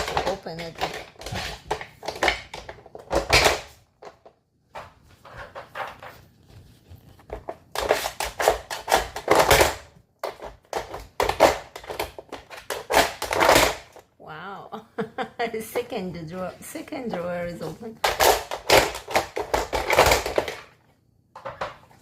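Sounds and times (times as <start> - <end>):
puzzle toy clattering and scraping: 0.0 - 6.4, 7.2 - 14.0, 16.8 - 20.8.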